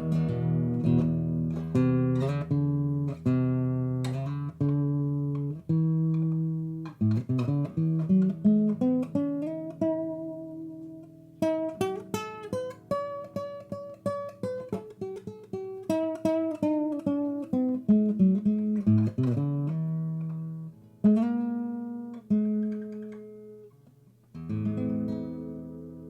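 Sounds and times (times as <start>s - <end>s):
acoustic guitar picking: 0.0s - 26.0s.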